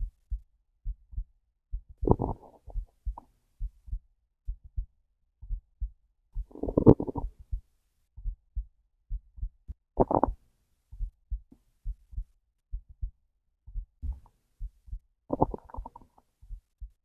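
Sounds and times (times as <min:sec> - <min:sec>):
heartbeat thumping: 0:00.0 - 0:07.6, 0:08.2 - 0:17.0
stomach gurgling: 0:02.0 - 0:02.8, 0:06.5 - 0:07.3, 0:10.0 - 0:10.4, 0:15.3 - 0:16.2.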